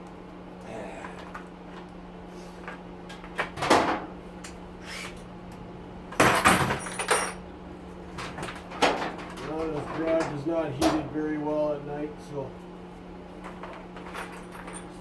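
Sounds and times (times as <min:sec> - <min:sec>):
steady low hum: 0:00.0 - 0:15.0
objects knocking and clattering: 0:06.1 - 0:07.4, 0:08.1 - 0:11.0.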